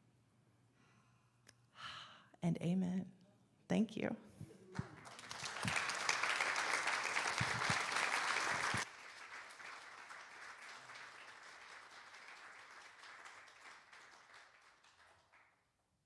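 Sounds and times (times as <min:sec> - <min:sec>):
congregation applauding: 0:04.7 - 0:15.7.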